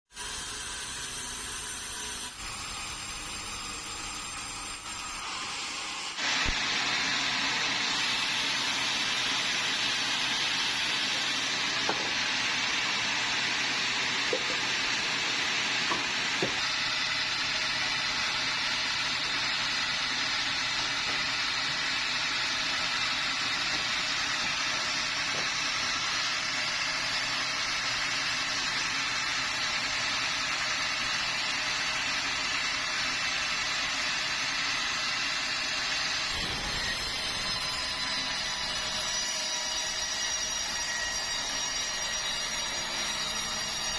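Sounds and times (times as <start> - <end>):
sawmill saw cutting log: 0.1 - 43.9.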